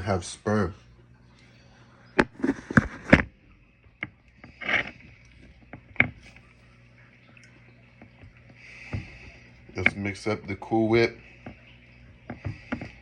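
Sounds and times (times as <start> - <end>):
scraping rustle: 4.4 - 5.2.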